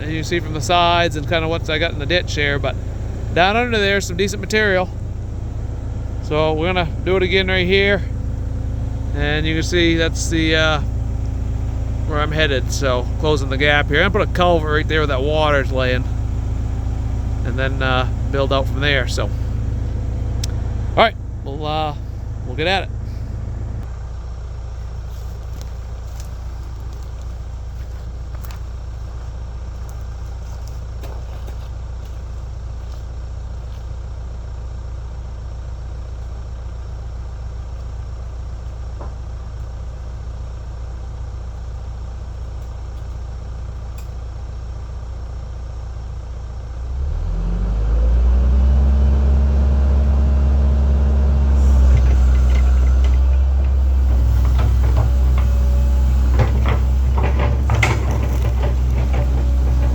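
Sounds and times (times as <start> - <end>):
excavator diesel engine: 0.0 - 59.9
knocks and clatter: 51.6 - 59.9.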